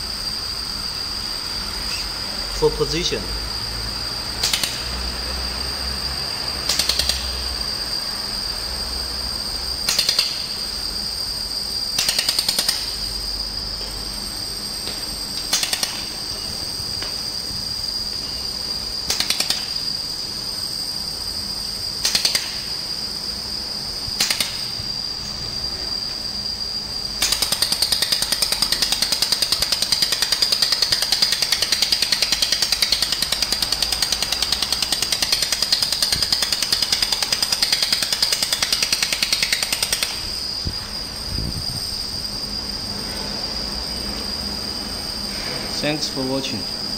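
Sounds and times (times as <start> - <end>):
steady high whine: 0.0 - 46.9
laser welding torch firing: 12.0 - 13.1, 19.0 - 19.9, 24.1 - 24.9, 27.2 - 40.4
fast pulsing rattle: 27.2 - 40.6.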